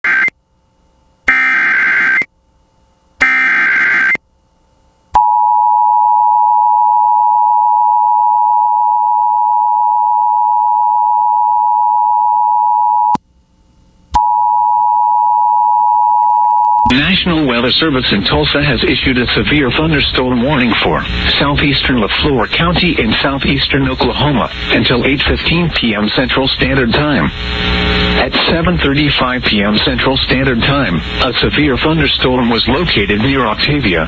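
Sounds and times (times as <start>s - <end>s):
two-tone attention signal: 3.2s - 4.2s
rapid data tone bursts: 16.8s - 34.0s.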